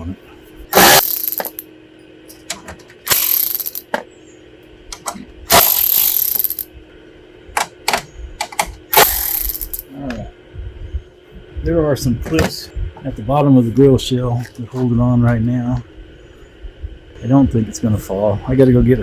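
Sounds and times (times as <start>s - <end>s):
power driver whirring: 0.7s - 1.6s, 2.4s - 4.0s, 5.0s - 6.7s, 7.6s - 9.8s
metal clicks and clinks: 0.8s - 1.6s, 3.1s - 3.9s, 5.0s - 6.6s, 7.9s - 9.8s.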